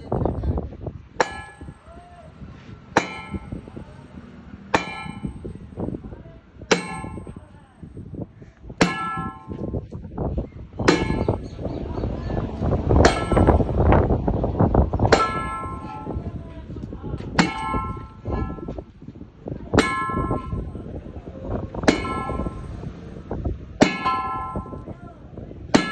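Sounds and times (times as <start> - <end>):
hammer striking metal: 1.2 - 2.1, 2.9 - 6.0, 6.7 - 7.8, 8.8 - 10.0, 10.9 - 11.7, 13.0 - 14.1, 15.0 - 16.4, 17.3 - 18.9, 19.8 - 21.0, 21.8 - 25.1.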